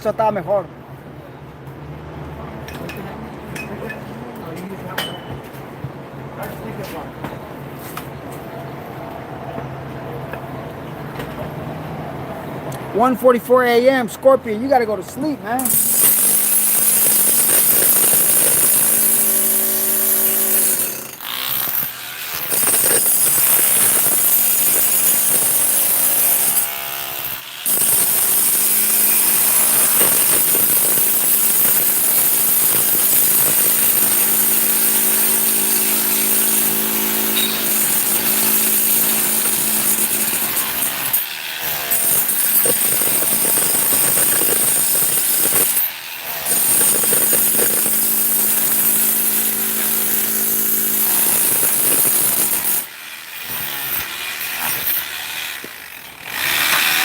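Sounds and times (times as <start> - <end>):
power tool running: 15.6 - 57.0.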